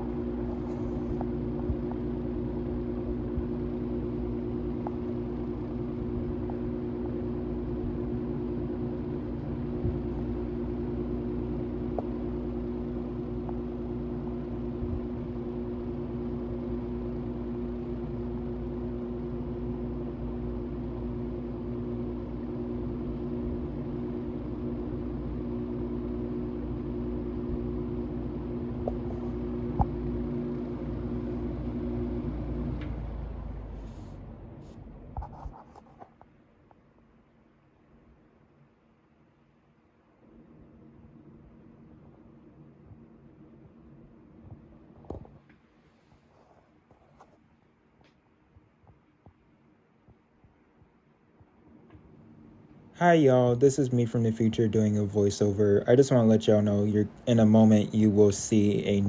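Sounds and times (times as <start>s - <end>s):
box fan motor humming: 0.0s - 36.1s, 51.6s - 59.0s.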